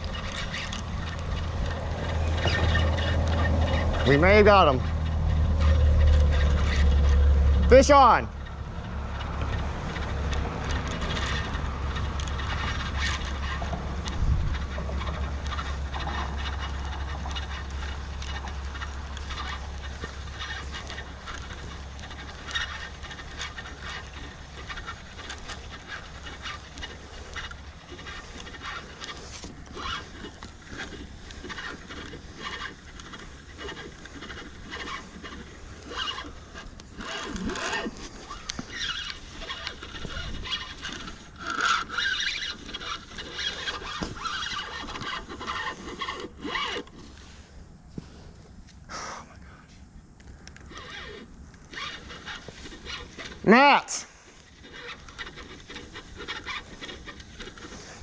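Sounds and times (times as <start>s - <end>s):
fishing reel scraping and clicking: 0.0s - 48.3s, 50.2s - 58.0s
wind on microphone: 14.2s - 14.7s.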